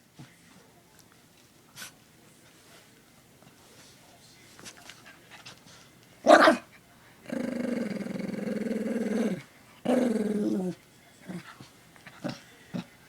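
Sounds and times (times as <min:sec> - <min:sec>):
dog growling: 0:07.2 - 0:13.0.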